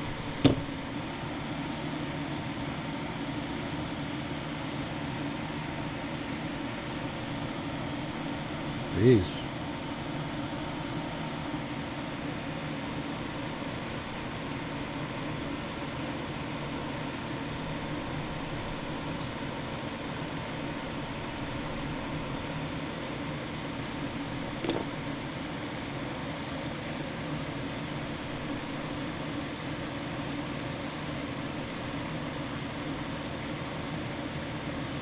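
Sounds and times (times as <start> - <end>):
fan whirring with low hum: 0.0 - 35.0
small click: 20.1 - 20.3.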